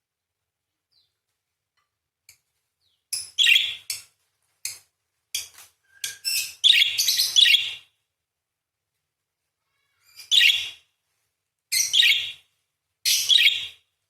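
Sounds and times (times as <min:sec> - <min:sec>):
parakeet screeching chatter: 0:10.0 - 0:10.8.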